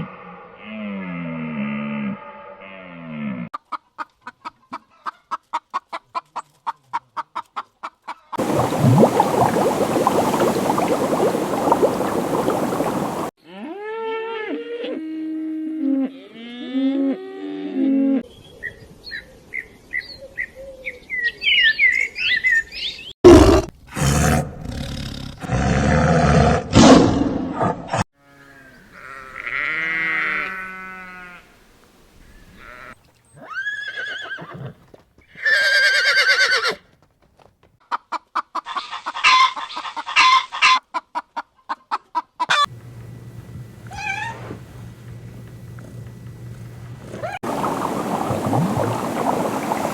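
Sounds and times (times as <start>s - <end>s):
farm animal calls: 42.5s - 49.9s.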